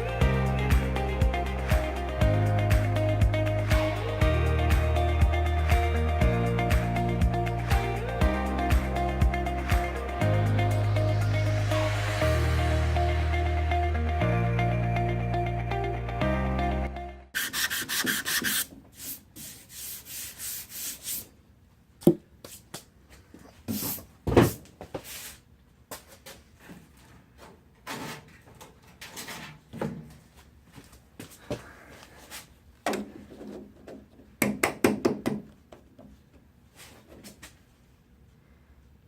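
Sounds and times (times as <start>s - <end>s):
sandpaper sanding strokes: 17.4s - 21.3s.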